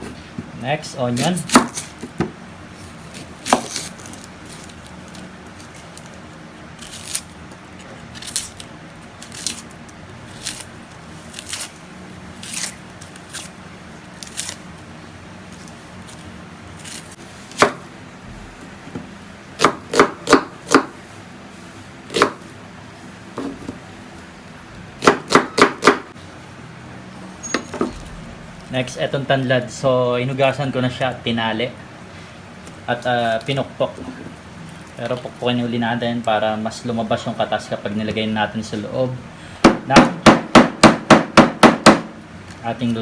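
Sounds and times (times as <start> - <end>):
knife chopping on a board: 1.5 - 2.4, 17.5 - 17.8, 18.9 - 21.0, 22.1 - 22.4, 25.0 - 26.1, 39.6 - 42.2.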